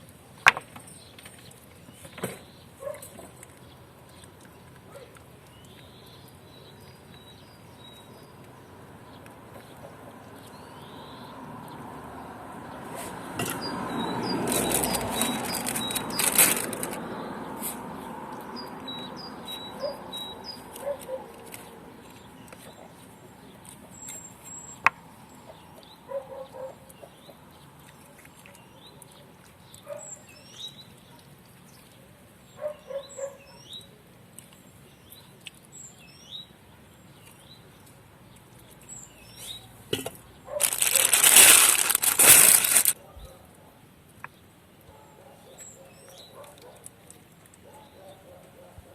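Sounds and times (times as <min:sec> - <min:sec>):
small birds chirping: 0:00.7 - 0:43.0
loud noisy rush: 0:40.6 - 0:43.0.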